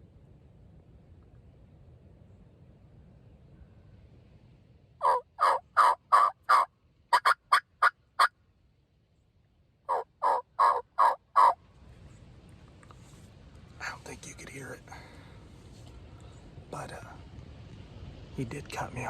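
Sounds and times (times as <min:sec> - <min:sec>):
turkey call yelping: 0:05.0 - 0:08.4, 0:09.9 - 0:11.6.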